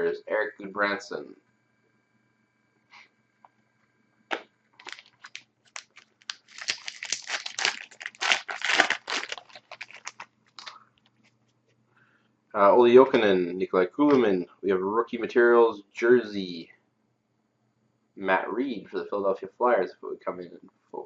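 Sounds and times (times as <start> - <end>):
foil wrapper tearing and crinkling: 4.8 - 10.8.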